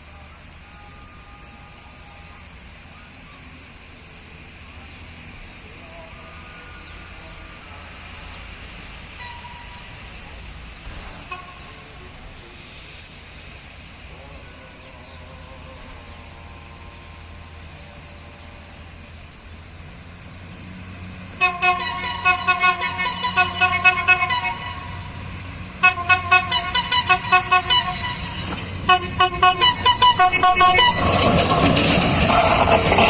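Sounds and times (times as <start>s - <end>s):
diesel engine rumble: 0.0s - 33.0s
train horn short toots: 9.2s - 10.0s, 11.1s - 12.0s, 21.4s - 33.0s.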